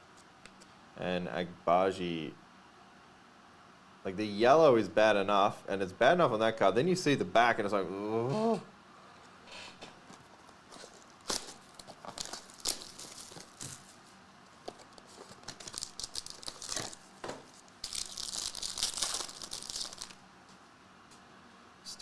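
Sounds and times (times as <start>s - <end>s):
cards clicking and crackling: 10.0s - 20.2s
wrappers tearing and crinkling: 10.0s - 20.2s.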